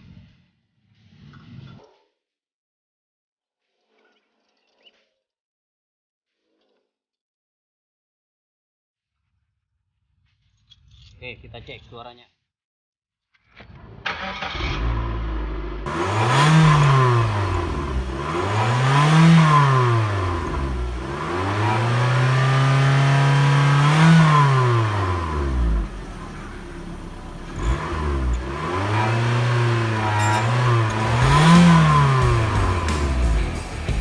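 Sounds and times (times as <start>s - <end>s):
car engine revving with whistle: 15.9s - 34.0s.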